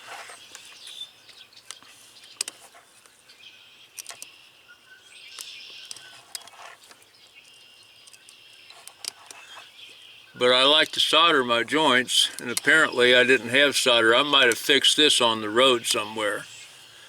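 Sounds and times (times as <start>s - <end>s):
small sharp clicks: 3.9s - 4.4s, 5.3s - 7.0s.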